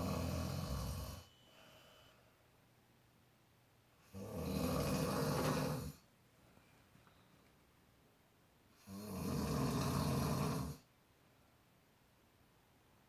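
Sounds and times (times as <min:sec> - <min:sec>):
person snoring: 0:00.0 - 0:01.3, 0:04.1 - 0:06.0, 0:08.8 - 0:10.9.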